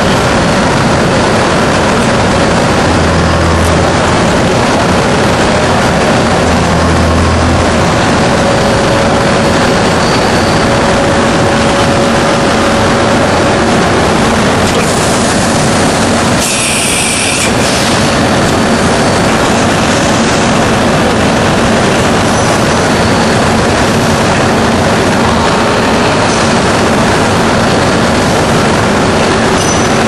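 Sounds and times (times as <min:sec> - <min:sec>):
machine running: 0:00.0 - 0:30.0
hiss burst: 0:16.4 - 0:18.0.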